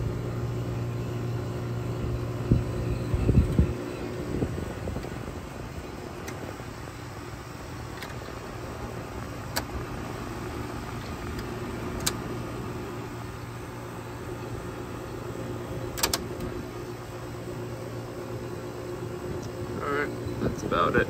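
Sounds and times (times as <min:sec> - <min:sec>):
air conditioner humming: 0:00.0 - 0:21.0
air conditioner sharp clicks: 0:03.3 - 0:03.8, 0:04.9 - 0:06.6, 0:07.8 - 0:08.5, 0:09.2 - 0:12.6, 0:15.8 - 0:16.7, 0:19.3 - 0:21.0.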